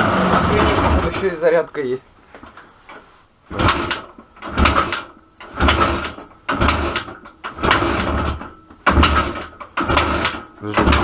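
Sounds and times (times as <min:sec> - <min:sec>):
motorcycle kick-start cranking clatter: 0:03.5 - 0:11.0.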